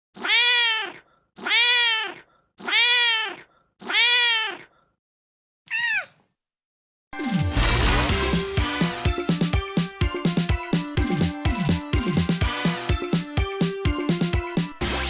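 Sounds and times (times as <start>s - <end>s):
cat meowing: 0.2s - 4.7s, 5.7s - 6.2s.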